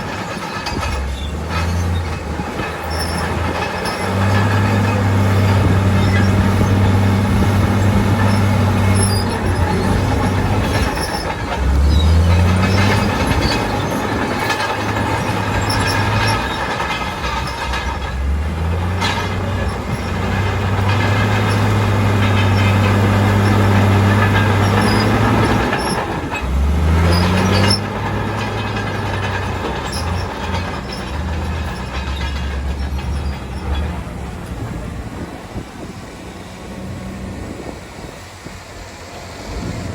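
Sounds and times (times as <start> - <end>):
diesel machinery engine under load: 0.0 - 39.9
metallic track clanking and squealing: 0.0 - 39.9.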